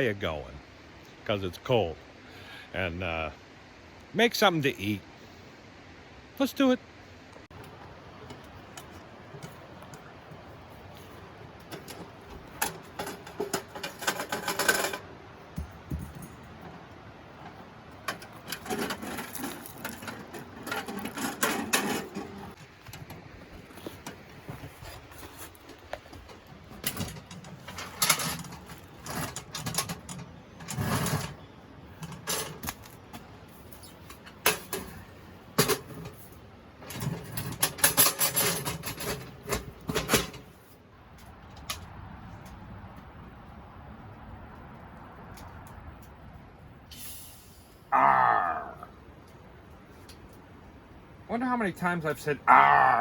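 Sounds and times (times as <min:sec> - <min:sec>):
camp gear and wood clattering: 0:06.6 - 0:43.6.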